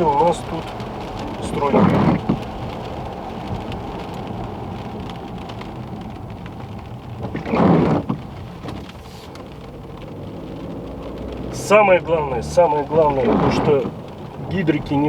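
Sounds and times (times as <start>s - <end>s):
car engine and tyres rumbling: 0.0s - 15.0s
rain hiss: 0.0s - 15.0s.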